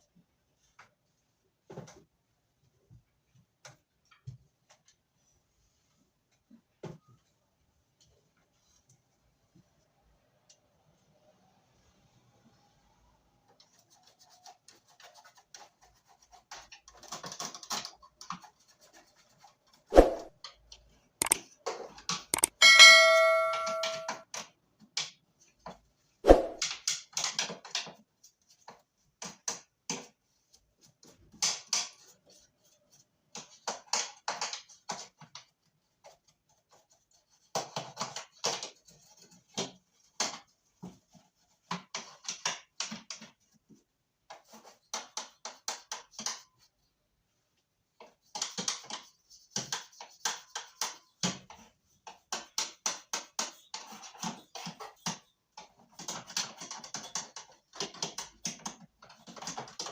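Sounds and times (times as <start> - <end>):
hands clicking and tapping plastic: 48.0 - 59.9.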